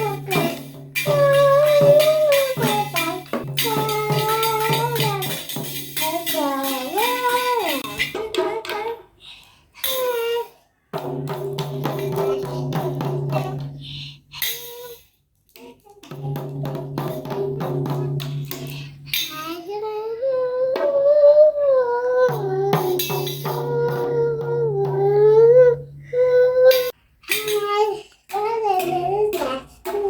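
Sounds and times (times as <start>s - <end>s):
person singing wavering melody: 0.0s - 5.4s, 6.0s - 9.2s, 19.4s - 30.0s
music with fast tambourine beats: 0.0s - 8.1s.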